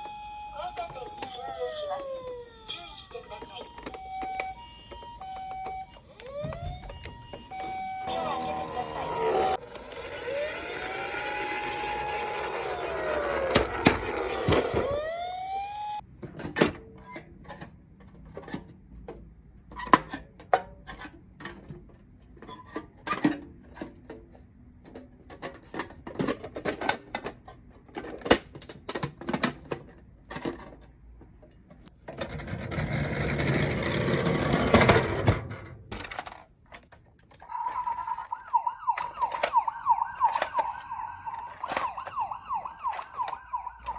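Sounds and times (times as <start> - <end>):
emergency siren wailing: 0.0 - 16.0, 37.4 - 43.9.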